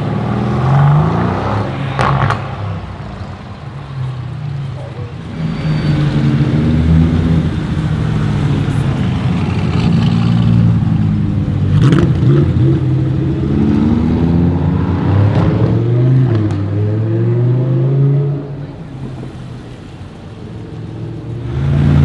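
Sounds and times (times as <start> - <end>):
car engine revving loudly: 0.0 - 2.6.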